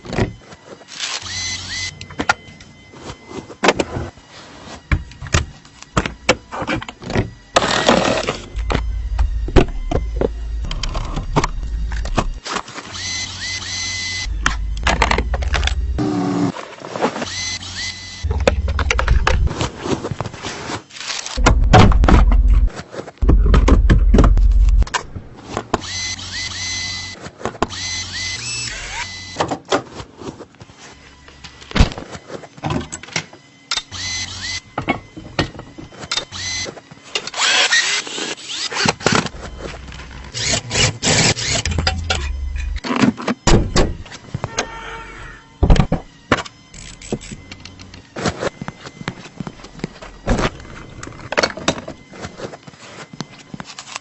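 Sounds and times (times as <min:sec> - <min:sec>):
low rumble: 0:08.6 - 0:12.4, 0:14.2 - 0:16.1, 0:18.2 - 0:19.7, 0:21.4 - 0:25.3, 0:39.3 - 0:40.8, 0:41.4 - 0:42.8.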